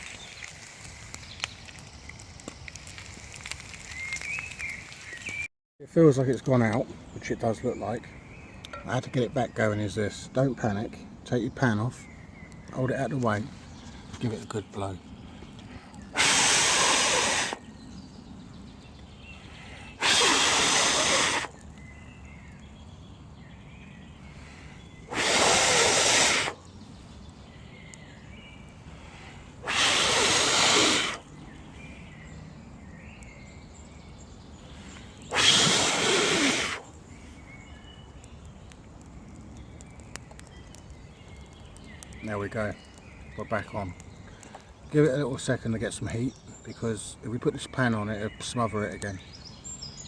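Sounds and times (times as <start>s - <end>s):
person blowing on embers: 15.2s - 17.7s, 19.2s - 21.7s, 24.1s - 27.6s, 28.6s - 31.6s, 34.5s - 37.5s.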